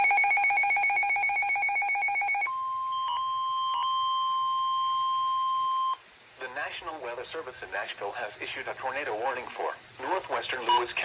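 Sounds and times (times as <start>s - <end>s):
rapidly pulsing alarm beep: 0.0s - 3.3s
steady warning alarm tone: 0.0s - 6.0s.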